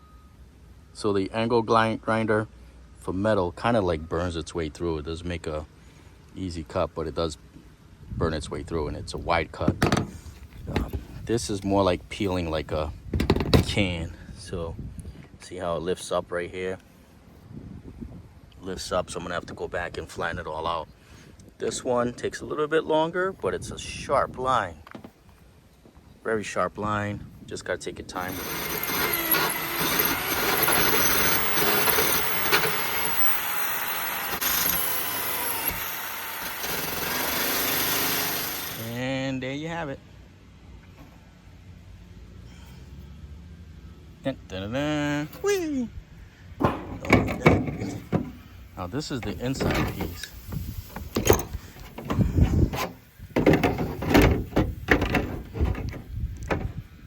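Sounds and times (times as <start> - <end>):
power tool cutting sheet metal: 28.2 - 39.0
plastic trim knocking and scraping: 46.6 - 48.4, 51.0 - 56.8.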